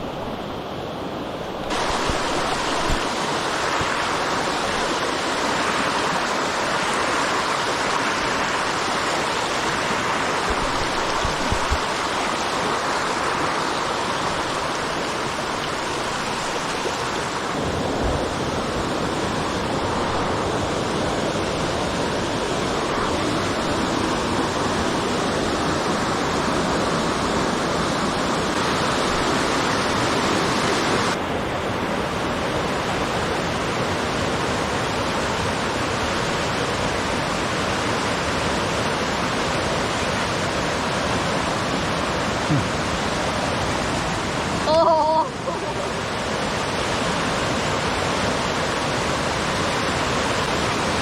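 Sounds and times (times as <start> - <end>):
rushing flowing water: 0.0 - 51.0.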